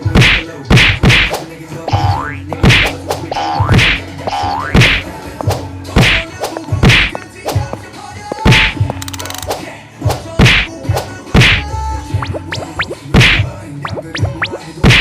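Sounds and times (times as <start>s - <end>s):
loud whacks and thuds: 0.0s - 1.5s, 2.6s - 4.0s, 4.7s - 7.7s, 8.4s - 8.8s, 9.5s - 11.7s, 13.2s - 13.5s
clicks and pitched blips: 1.9s - 5.0s, 12.1s - 15.0s.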